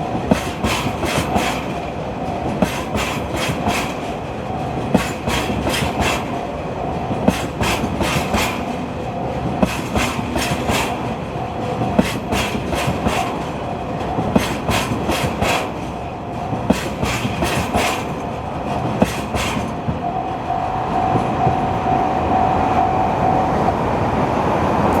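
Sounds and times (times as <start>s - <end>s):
train wheels clicking over rail joints: 0.0s - 21.8s.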